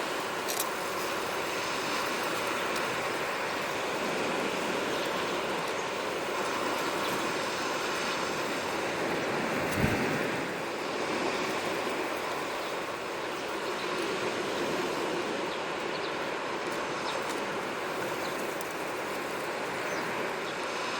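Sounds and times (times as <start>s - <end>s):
sea waves washing ashore: 0.0s - 20.9s.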